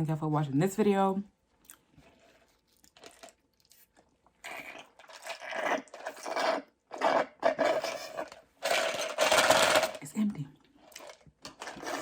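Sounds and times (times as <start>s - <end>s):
crunching and chewing: 1.6s - 8.4s.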